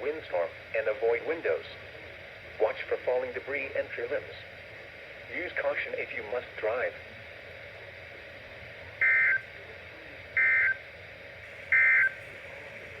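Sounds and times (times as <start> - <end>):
radio hiss: 0.0 - 13.0
short bursts of data tones: 9.0 - 9.5, 10.4 - 10.8, 11.7 - 12.2.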